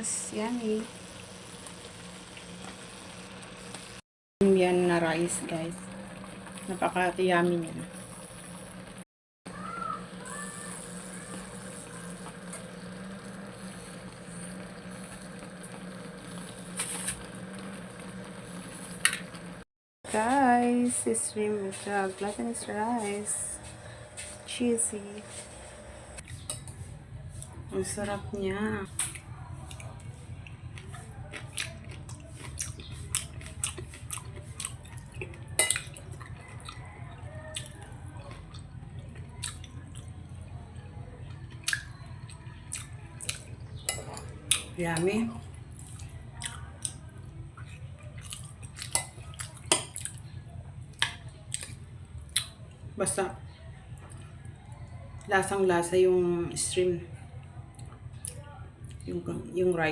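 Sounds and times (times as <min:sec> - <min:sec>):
low hum: 0:00.0 - 0:09.0, 0:10.3 - 0:30.8
wet chewing mouth clicks: 0:28.9 - 0:36.8, 0:37.5 - 0:40.1, 0:47.6 - 0:50.2, 0:51.0 - 0:52.6.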